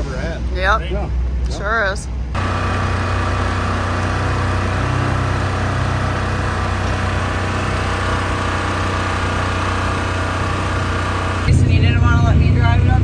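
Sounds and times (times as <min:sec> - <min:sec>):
diesel engine idling: 0:02.4 - 0:13.0.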